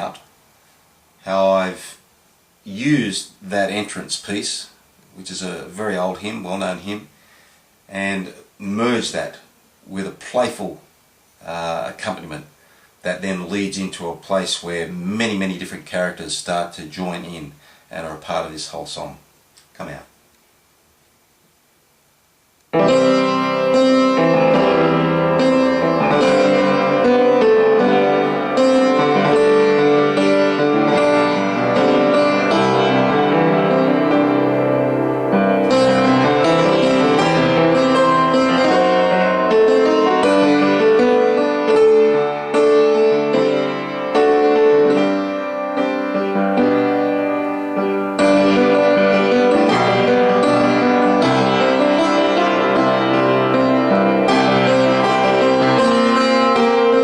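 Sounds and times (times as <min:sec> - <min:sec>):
instrumental keyboard music: 0:22.7 - 0:57.0.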